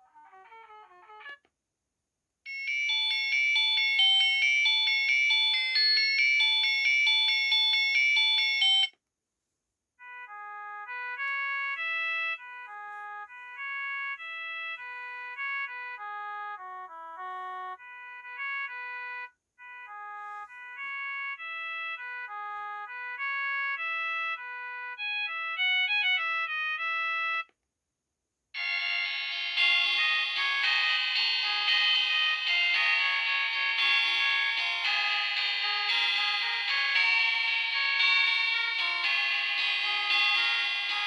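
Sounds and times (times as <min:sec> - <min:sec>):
polyphonic ringtone melody: 0:02.5 - 0:08.9, 0:28.6 - 0:41.0
bright ringtone: 0:02.5 - 0:09.0, 0:28.6 - 0:41.0.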